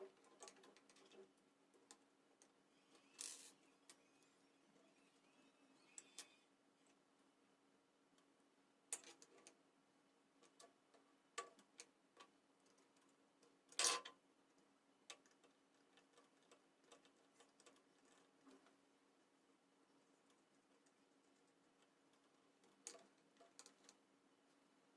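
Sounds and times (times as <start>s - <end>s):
small clicks of hard parts: 0.0s - 4.3s, 5.8s - 7.0s, 8.9s - 9.6s, 10.4s - 18.8s, 20.2s - 24.0s.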